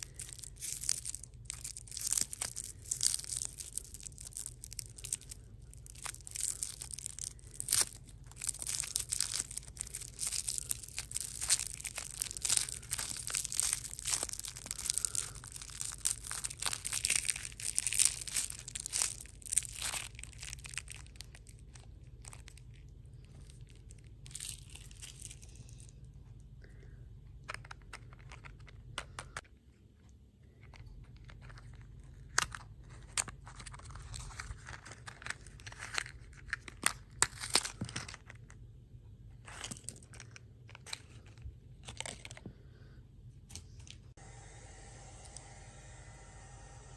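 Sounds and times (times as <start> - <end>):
plastic wrappers crinkling: 0.0 - 25.9, 30.8 - 38.6, 39.4 - 42.6
crunching: 0.0 - 29.4.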